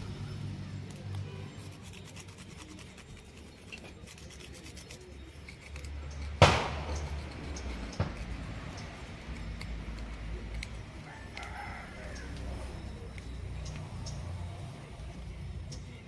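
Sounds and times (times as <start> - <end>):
rapid scraping strokes: 0.0 - 16.0
sharp knock: 6.4 - 8.4.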